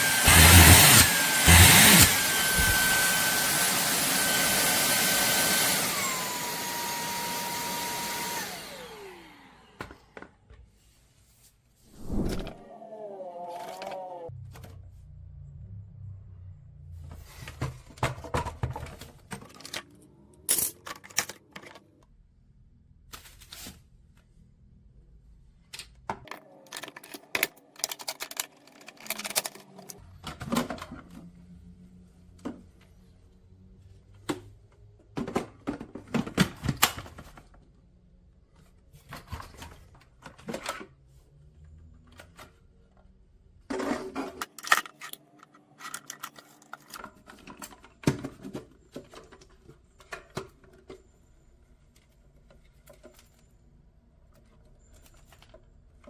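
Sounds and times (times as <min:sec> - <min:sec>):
clicks and knocks of objects handled: 0:25.7 - 0:31.3, 0:43.7 - 0:51.2.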